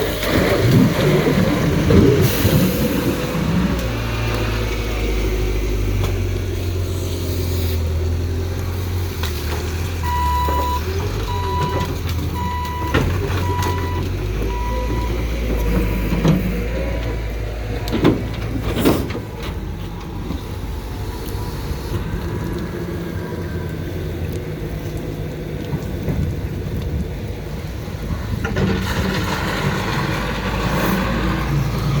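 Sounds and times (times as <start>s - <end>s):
refuse truck engine running: 0.0s - 32.0s
clatter: 28.1s - 32.0s.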